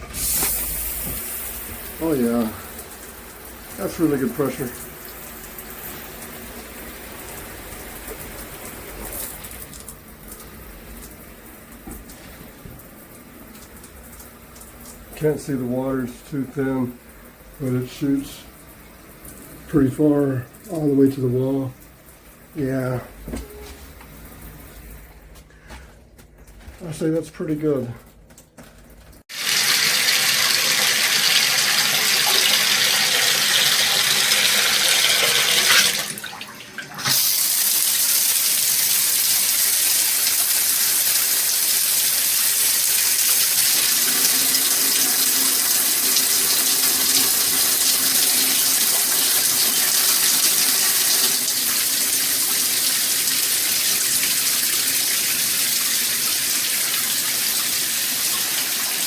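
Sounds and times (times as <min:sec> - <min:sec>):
shower head spraying water: 0:29.3 - 0:36.2, 0:37.0 - 0:59.0.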